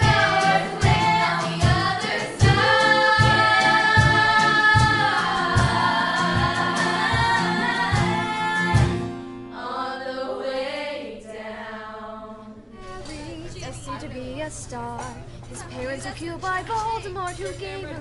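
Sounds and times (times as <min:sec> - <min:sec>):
group of voices singing: 0:00.0 - 0:13.0.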